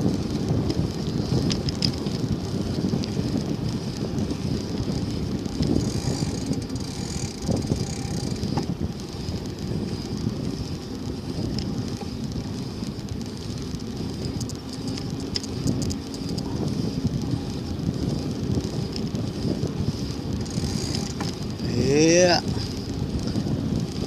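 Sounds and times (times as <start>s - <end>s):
bicycle rattling: 0.0s - 24.0s
wind on microphone: 0.0s - 24.0s
faint clicks: 0.7s - 2.2s, 11.5s - 17.3s.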